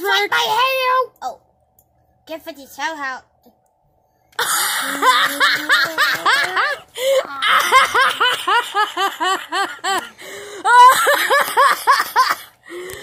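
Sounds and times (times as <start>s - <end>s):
child laughing: 4.4s - 12.5s.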